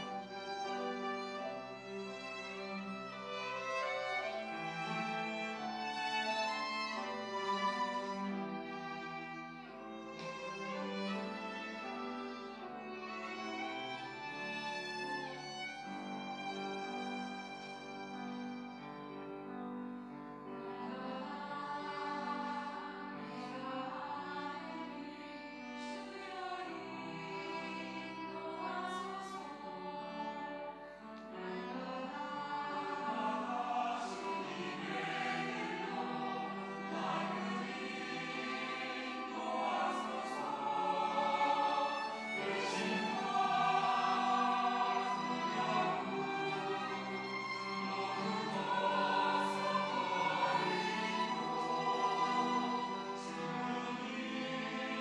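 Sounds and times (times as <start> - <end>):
choir singing in parts: 0.0 - 16.4, 20.8 - 30.7, 31.3 - 55.0
accompanying instruments: 33.0 - 54.2.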